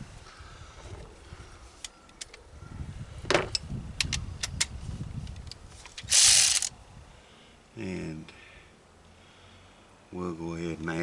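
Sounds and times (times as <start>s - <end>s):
short rasping burst: 6.0s - 6.7s.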